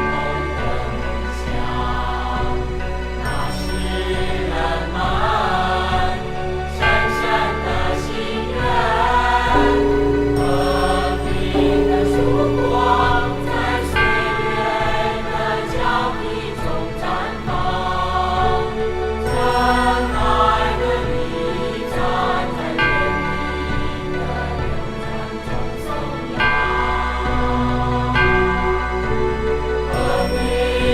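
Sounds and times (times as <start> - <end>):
choir singing: 4.0 - 26.4
low sustained instrumental chords: 9.4 - 15.2.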